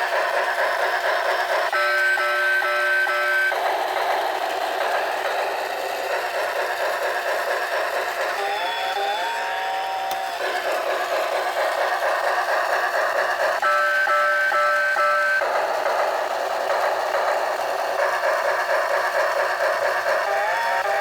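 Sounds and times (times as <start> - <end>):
steam train chuffing: 0.0 - 9.4, 10.2 - 21.0.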